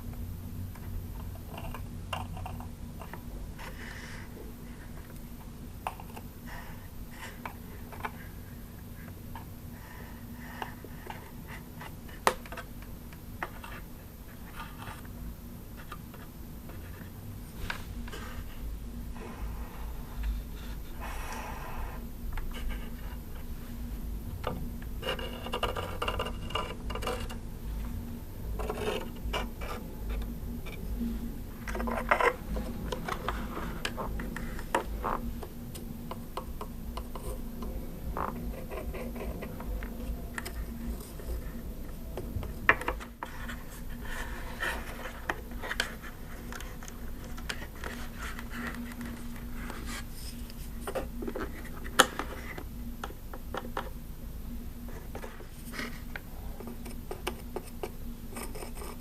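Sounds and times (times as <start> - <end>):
faint steady hum: 0.0 - 59.0
scratching and tapping on plastic: 24.4 - 27.4.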